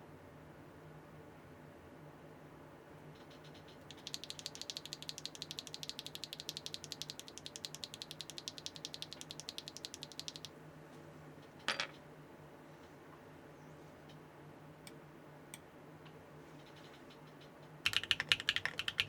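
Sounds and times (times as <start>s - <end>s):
mechanical keyboard typing: 3.3s - 10.5s, 17.8s - 19.0s.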